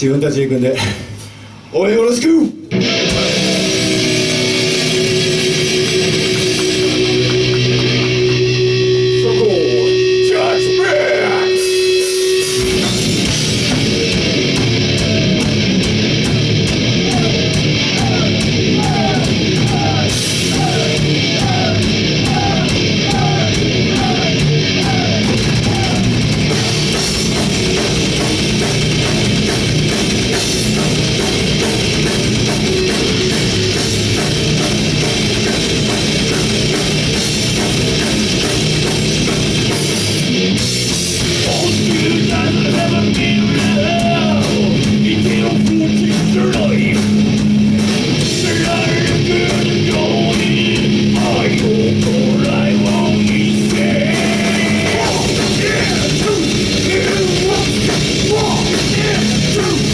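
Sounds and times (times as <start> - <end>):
heavy rock band playing: 0.0 - 59.9.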